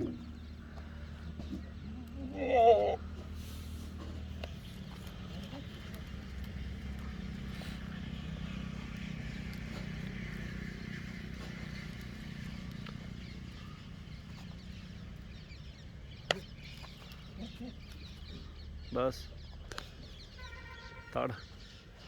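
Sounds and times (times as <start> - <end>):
chickens clucking: 0.0 - 3.4.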